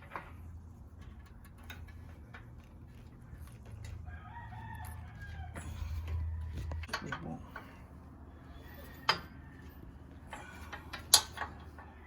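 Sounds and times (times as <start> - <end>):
steady low hum: 0.0 - 12.0
rooster crowing: 4.0 - 6.8.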